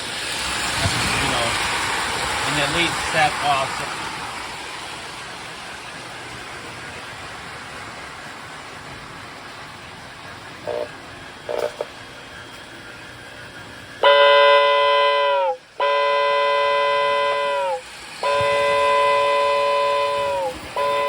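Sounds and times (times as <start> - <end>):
steady hiss: 0.0 - 21.0
toy train whistle blasts: 10.6 - 12.0, 14.0 - 21.0.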